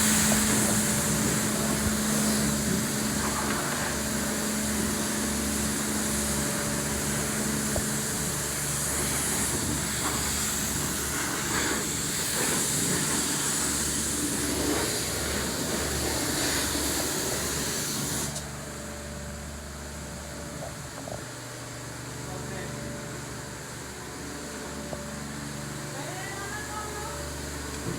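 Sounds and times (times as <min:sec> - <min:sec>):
high-pressure water spraying: 0:00.0 - 0:20.2
wash pump hum: 0:00.0 - 0:27.9.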